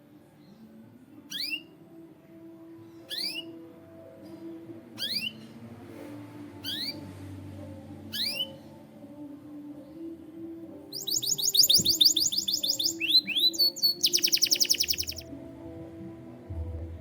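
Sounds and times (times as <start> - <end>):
canary singing: 1.2 - 1.8, 3.0 - 3.6, 5.0 - 5.5, 6.6 - 7.1, 8.0 - 8.8, 10.8 - 15.3.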